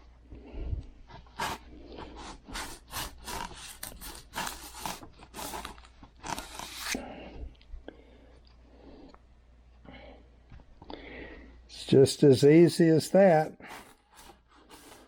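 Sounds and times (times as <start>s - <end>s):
cutter scraping through foam: 1.4s - 7.0s.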